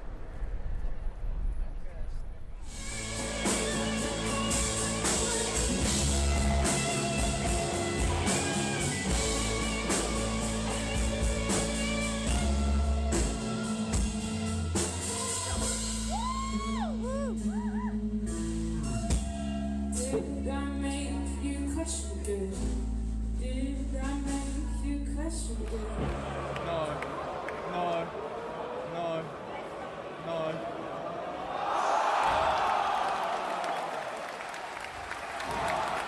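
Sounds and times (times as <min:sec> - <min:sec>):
drums: 0:00.0 - 0:20.7, 0:21.9 - 0:26.6
rock music: 0:02.7 - 0:20.7
guitar: 0:02.7 - 0:27.0.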